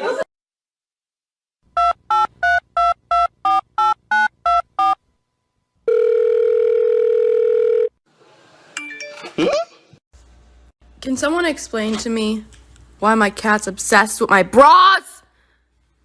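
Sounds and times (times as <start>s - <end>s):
telephone ringback tone: 5.9s - 8.0s.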